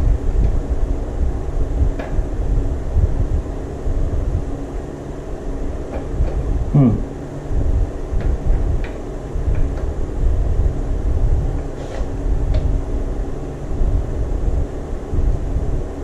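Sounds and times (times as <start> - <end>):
steady low rumble: 0.0 - 16.0.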